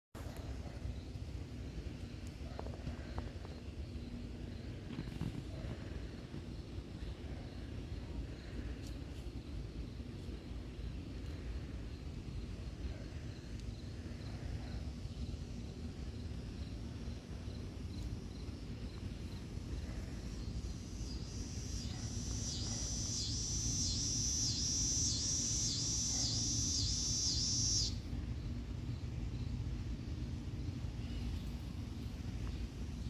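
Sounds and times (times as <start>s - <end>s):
steady low rumble: 0.2s - 33.0s
pulsing insect buzz: 19.8s - 28.0s
fast high ticking: 21.5s - 27.9s.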